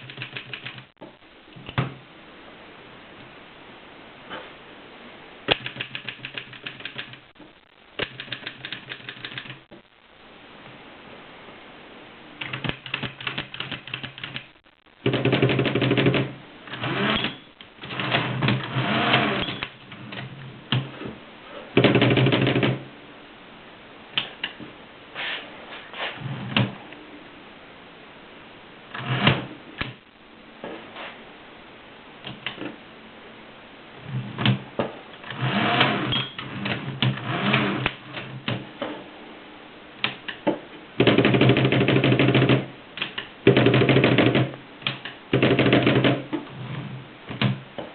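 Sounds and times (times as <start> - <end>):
typewriter buzzing bursts: 5.5 - 7.3.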